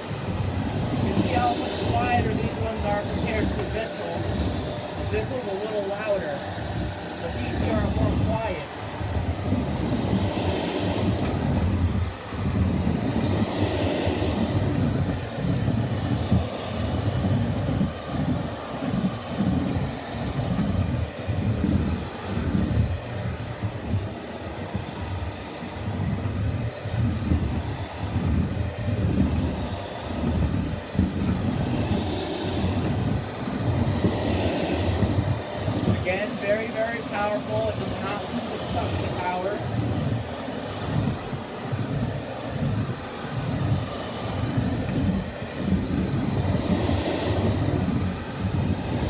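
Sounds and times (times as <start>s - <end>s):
hissing rush: 0.0s - 11.3s, 29.7s - 49.0s
upright vacuum cleaner running: 0.0s - 49.0s.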